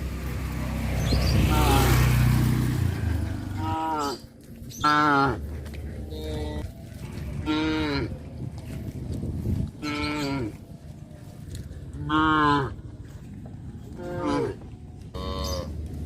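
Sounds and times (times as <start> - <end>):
cows mooing: 3.5 - 6.7, 7.3 - 8.2, 9.8 - 10.7, 12.0 - 12.8, 13.9 - 15.8.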